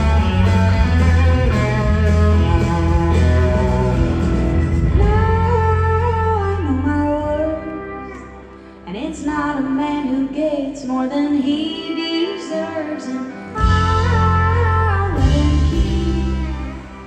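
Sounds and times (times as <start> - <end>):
band playing: 0.0 - 6.7, 13.6 - 17.0
woman singing: 4.9 - 17.0.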